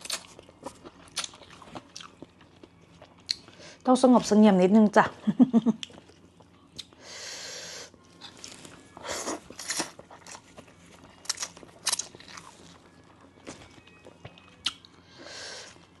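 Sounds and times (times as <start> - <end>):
person chewing and crunching food: 0.0 - 3.6, 7.9 - 16.0.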